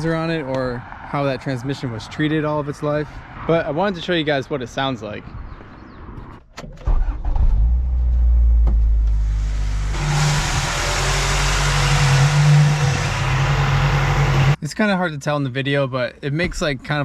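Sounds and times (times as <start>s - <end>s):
road noise: 0.0s - 14.6s
car engine accelerating: 7.0s - 14.6s.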